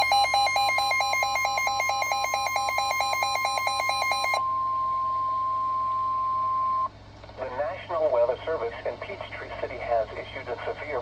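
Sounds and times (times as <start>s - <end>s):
electronic alarm beeping two pitches: 0.0s - 6.9s
steady single alarm tone: 0.0s - 6.9s.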